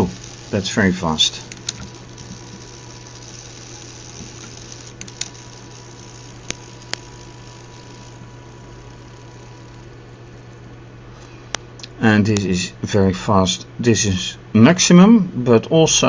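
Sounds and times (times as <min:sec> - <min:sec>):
small electric motor whining: 0:00.0 - 0:10.7
sharp clicks: 0:01.4 - 0:10.7.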